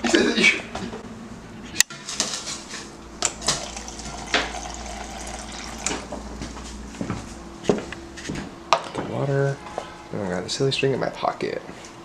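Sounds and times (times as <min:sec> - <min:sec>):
tap water filling container: 0:03.4 - 0:06.2.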